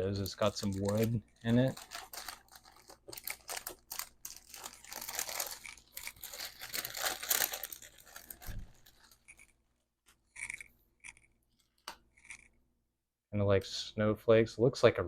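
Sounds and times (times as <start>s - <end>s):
plastic packaging crinkling and tearing: 0.0s - 9.5s.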